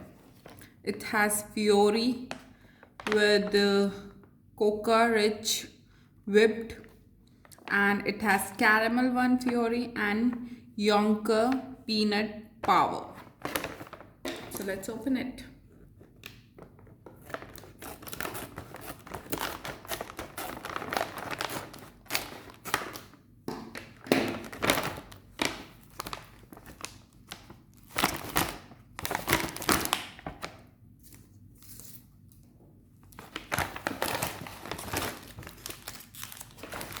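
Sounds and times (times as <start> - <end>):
plastic packaging crinkling: 13.2 - 14.9, 16.1 - 32.2, 33.0 - 37.0.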